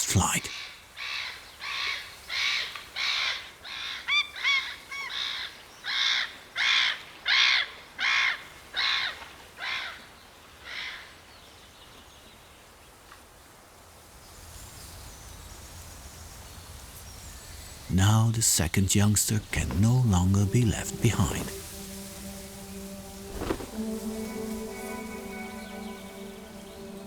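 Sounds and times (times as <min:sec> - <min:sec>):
faint low background noise: 0:00.0 - 0:00.7, 0:13.4 - 0:27.0.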